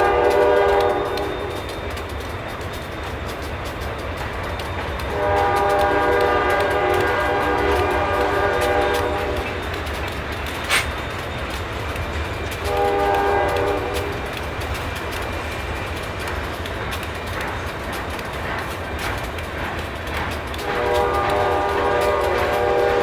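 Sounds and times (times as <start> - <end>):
locomotive air horn blasts: 0.0 - 1.2, 5.1 - 9.4, 12.7 - 14.0, 20.6 - 23.0
sharp click: 10.4 - 11.2.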